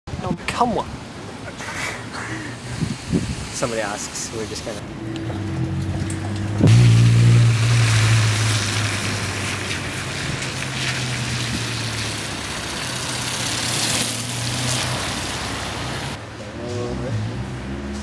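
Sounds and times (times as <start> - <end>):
steady hiss: 1.5 - 4.8.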